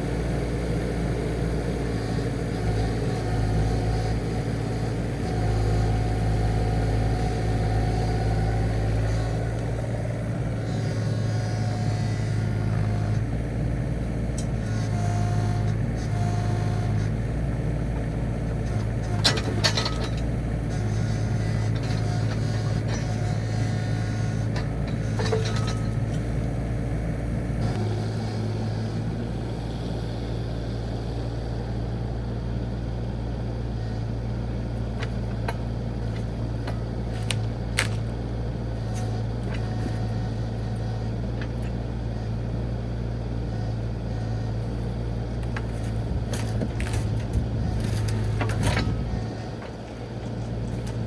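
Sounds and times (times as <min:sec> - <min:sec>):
diesel engine running: 0:00.0 - 0:51.0.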